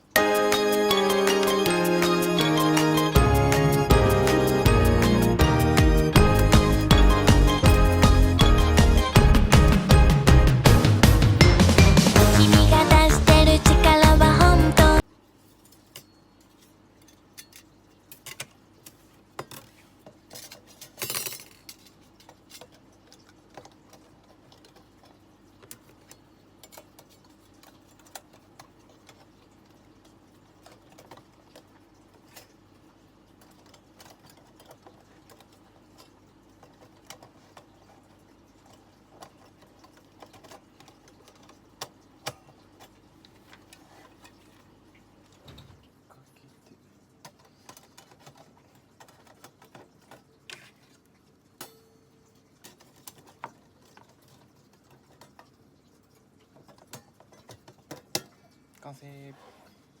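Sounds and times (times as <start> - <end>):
metal parts clinking: 20.3 - 22.7.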